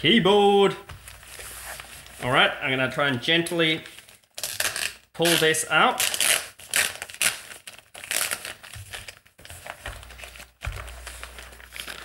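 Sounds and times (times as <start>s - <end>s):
packaging rustling and crinkling: 0.9s - 2.3s, 6.0s - 12.0s.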